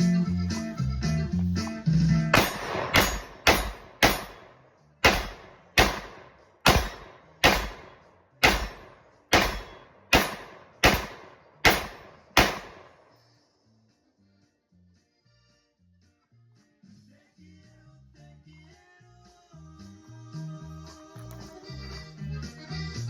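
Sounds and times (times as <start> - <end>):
pistol gunshots: 2.3 - 13.1.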